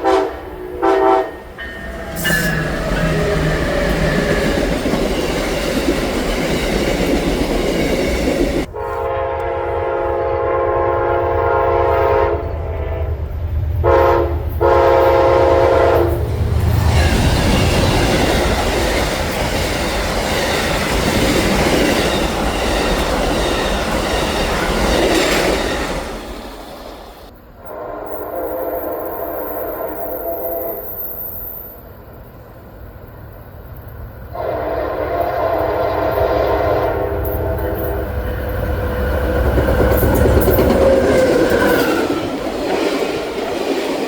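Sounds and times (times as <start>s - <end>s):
locomotive air horn blasts: 0.0s - 1.6s, 8.6s - 13.2s, 13.8s - 16.2s, 27.6s - 30.9s, 34.3s - 38.5s
train rumble and rail clatter: 0.0s - 44.0s.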